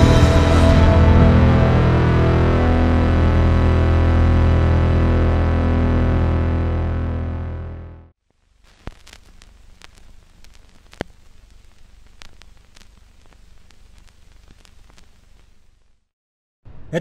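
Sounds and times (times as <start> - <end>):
music: 0.0 - 8.1
record hiss with crackles: 8.2 - 16.1.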